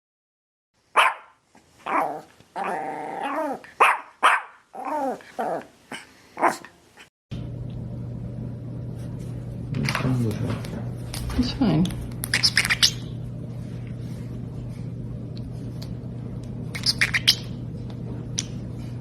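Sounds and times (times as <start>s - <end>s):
dog barking: 0.9s - 2.2s, 3.8s - 4.6s, 6.4s - 6.6s
steady low hum: 7.3s - 19.0s.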